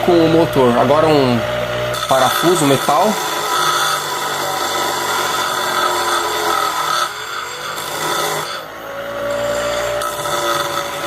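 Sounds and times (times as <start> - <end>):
electric motor grinding metal screw: 0.0 - 11.0.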